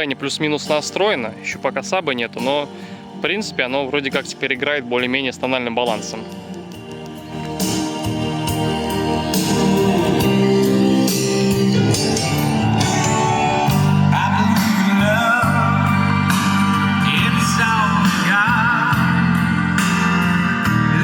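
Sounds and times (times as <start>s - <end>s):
song with singing and guitar: 6.2s - 21.0s.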